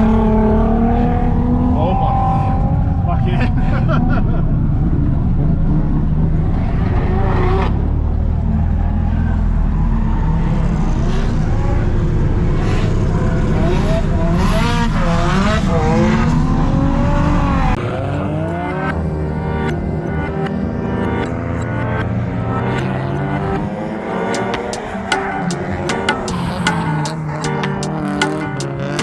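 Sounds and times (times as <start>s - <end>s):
car engine revving: 10.1s - 29.0s
tyre noise: 23.5s - 29.0s.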